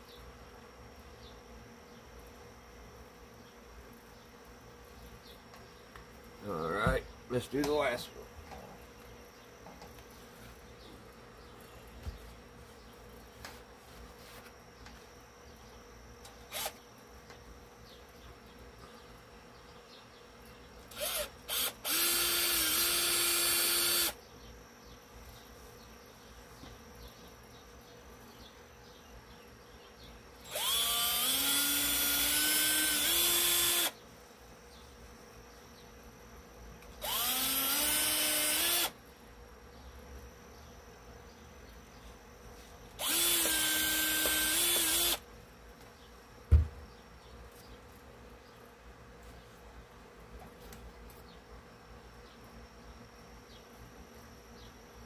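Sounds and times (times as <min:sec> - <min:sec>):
power tool whining: 0:16.2 - 0:16.8, 0:20.9 - 0:24.2, 0:30.4 - 0:34.0, 0:36.9 - 0:39.0, 0:43.0 - 0:45.2.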